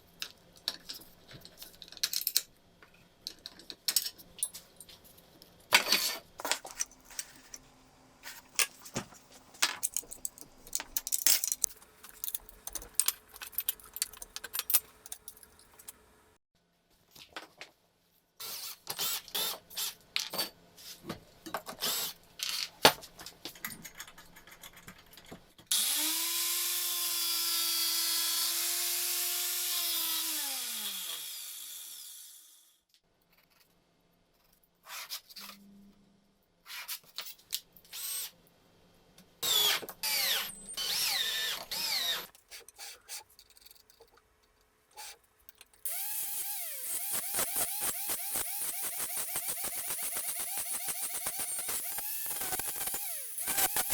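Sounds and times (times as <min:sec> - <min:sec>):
metal parts clicking and knocking: 0:09.6 - 0:16.0, 0:42.7 - 0:53.9
handheld power tool running: 0:25.7 - 0:32.8, 0:39.4 - 0:42.3, 0:45.9 - 0:53.9.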